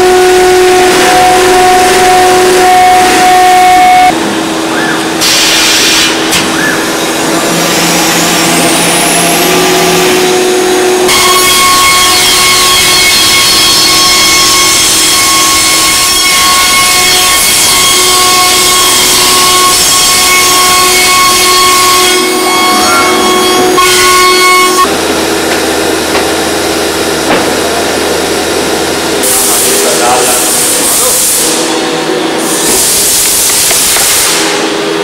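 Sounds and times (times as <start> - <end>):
cnc router spindle whine: 0.0 - 5.2, 6.2 - 35.0
plywood cutting noise: 5.0 - 31.8.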